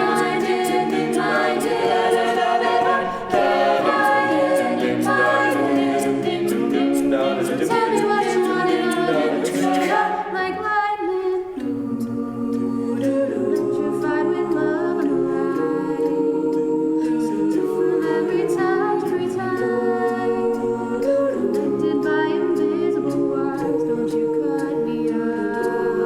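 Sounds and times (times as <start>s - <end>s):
steady percussive beat: 0.0s - 10.4s
a cappella group singing: 0.0s - 26.0s.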